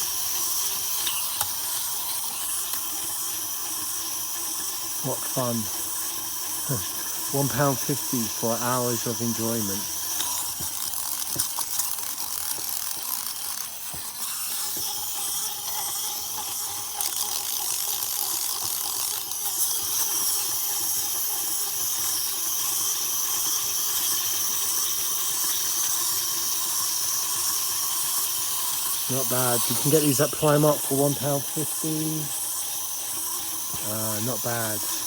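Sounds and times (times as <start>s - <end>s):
wind-up toy motors whirring: 0.0s - 35.0s
steady hiss: 29.1s - 32.4s, 33.7s - 35.0s.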